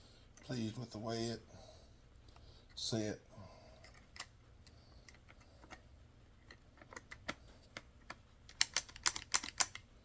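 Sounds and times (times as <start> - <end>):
small plastic parts clicking: 6.4 - 9.9.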